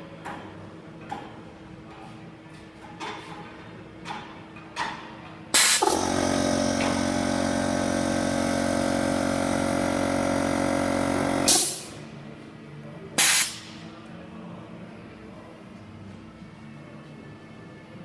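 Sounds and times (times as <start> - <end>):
welding machine humming: 5.6 - 12.0.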